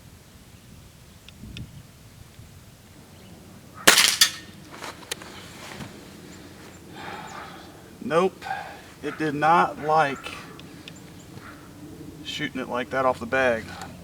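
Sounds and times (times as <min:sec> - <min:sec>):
air rifle shot: 0:03.9 - 0:04.6
faint clicks: 0:10.5 - 0:11.6.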